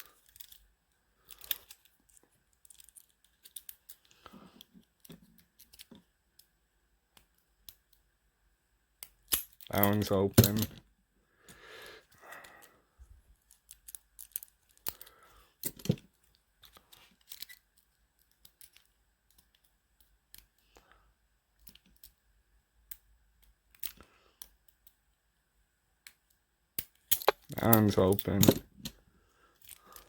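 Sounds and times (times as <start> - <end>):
lock pick clicking and scraping: 1.3 - 6.1, 16.6 - 19.7, 26.8 - 29.0.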